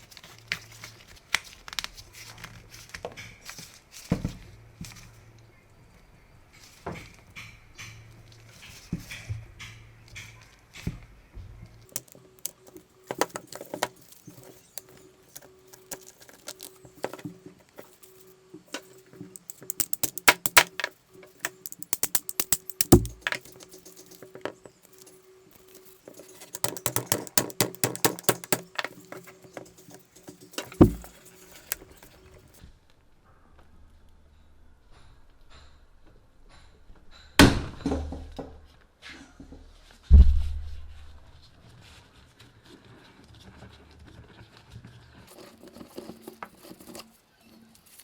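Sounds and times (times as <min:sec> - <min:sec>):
small parts clicking and rattling: 0:11.9 - 0:32.6
heavier knocks: 0:30.7 - 0:31.2.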